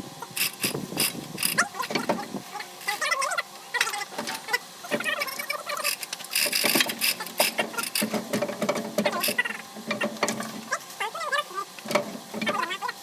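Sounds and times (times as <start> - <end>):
metal tools clicking and clanking: 0.4 - 2.2, 2.8 - 3.1, 4.2 - 10.6.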